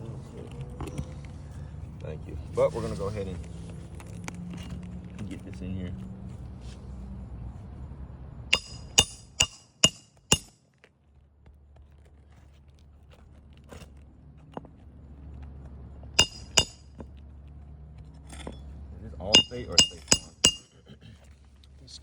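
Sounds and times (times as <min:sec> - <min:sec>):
metal tool striking metal: 0:08.5 - 0:10.5, 0:16.2 - 0:16.8, 0:19.3 - 0:20.7.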